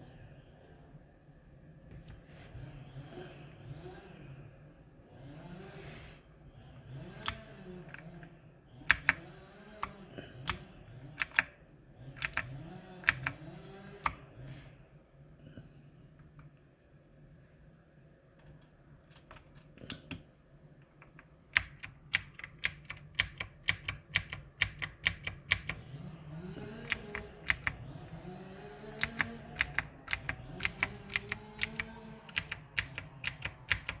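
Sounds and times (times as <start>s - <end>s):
mechanical keyboard typing: 7.0s - 8.2s, 8.9s - 11.5s, 12.1s - 14.3s, 21.0s - 25.8s, 26.7s - 34.0s.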